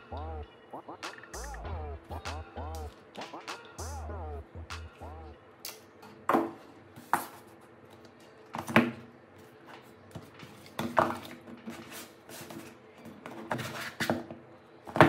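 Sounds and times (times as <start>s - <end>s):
faint steady hum: 0.0s - 10.5s.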